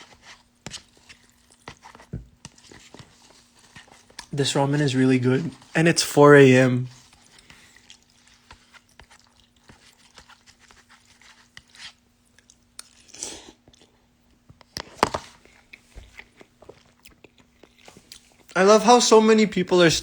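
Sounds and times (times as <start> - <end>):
person chewing: 0.0 - 4.4, 6.9 - 14.1, 14.7 - 18.6.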